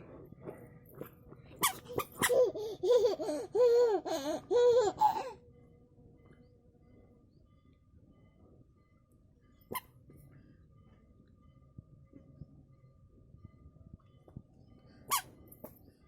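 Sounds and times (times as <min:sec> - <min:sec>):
young child laughing: 0:02.0 - 0:05.3.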